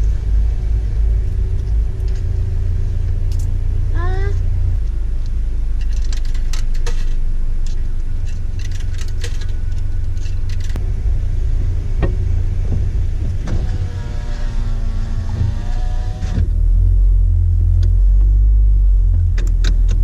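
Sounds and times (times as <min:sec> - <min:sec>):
car driving rumble: 0:00.0 - 0:20.0.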